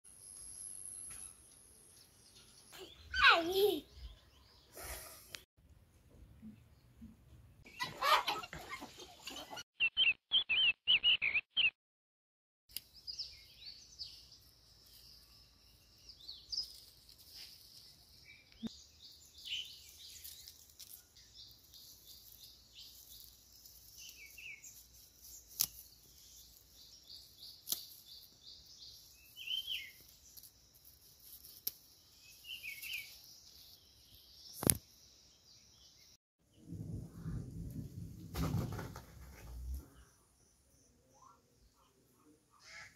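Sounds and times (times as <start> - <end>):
birds chirping: 0.4 - 5.5, 9.2 - 11.8, 12.8 - 36.9.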